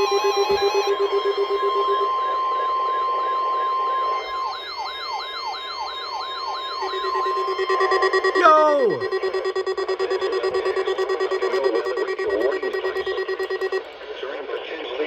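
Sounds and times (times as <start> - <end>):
steady alert tone: 0.0 - 2.1, 6.8 - 13.9
siren-like alarm sweeping down: 0.0 - 13.8
low pulsing beep: 0.0 - 13.9.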